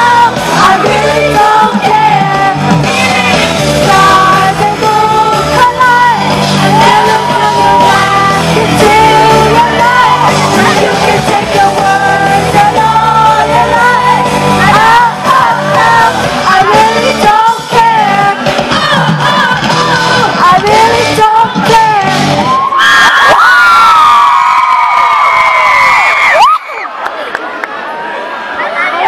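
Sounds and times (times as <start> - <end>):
audience singing along and yelling: 0.0 - 22.6
live pop song: 0.0 - 23.4.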